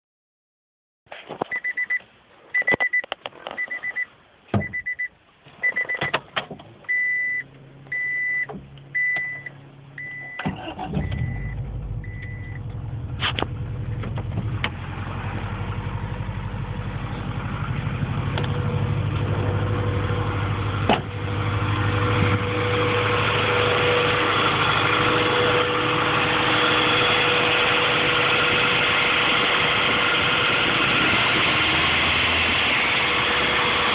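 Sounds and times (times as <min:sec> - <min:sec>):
clicks and handling noises: 0:01.1 - 0:04.0
car warning chime beeping: 0:01.5 - 0:02.0, 0:02.6 - 0:06.2, 0:06.9 - 0:12.7
car engine running: 0:06.6 - 0:33.9.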